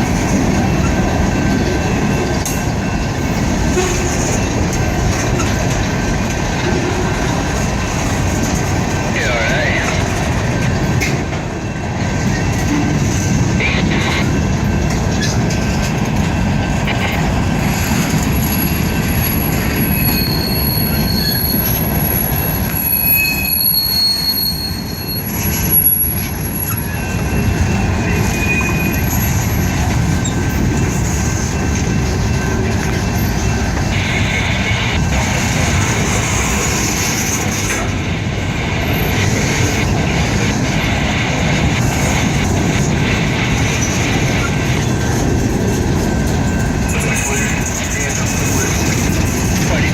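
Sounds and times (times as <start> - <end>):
freight train rumbling past: 0.0 - 49.9
high wheel squeals: 17.1 - 37.5.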